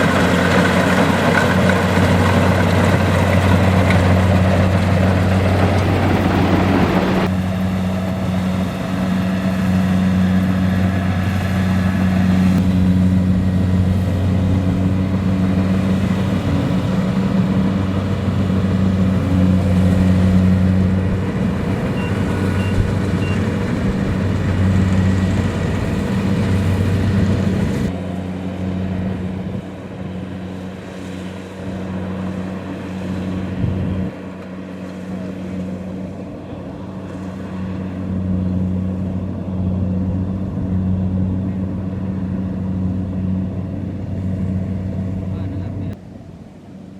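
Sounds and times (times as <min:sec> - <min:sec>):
combine harvester engine droning: 0:00.0 - 0:46.9
higher machine noise: 0:00.0 - 0:46.9.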